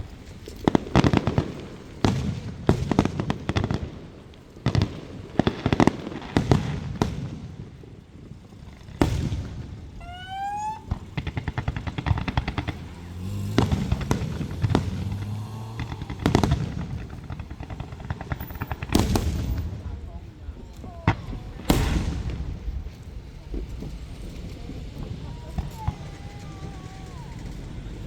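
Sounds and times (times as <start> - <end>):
firework crackling: 0.0 - 28.0
firework shells bursting: 9.0 - 20.2, 20.8 - 28.0
whistling firework rising: 9.9 - 19.6, 23.7 - 28.0.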